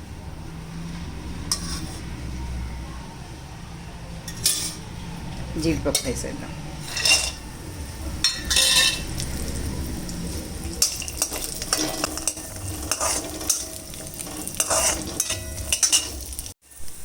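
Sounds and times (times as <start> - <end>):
spoon scraping and clinking pan: 1.5 - 2.1, 4.3 - 4.8, 6.8 - 7.5, 8.2 - 9.3, 10.7 - 16.5
nuts sizzling in oil: 6.8 - 17.0.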